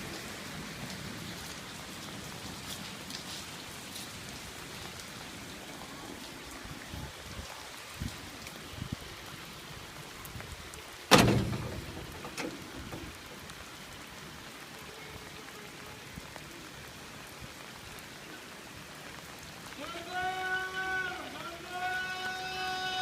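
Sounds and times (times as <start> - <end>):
rain pattering on surfaces: 0.0 - 23.0
sudden loud crack: 11.1 - 13.2.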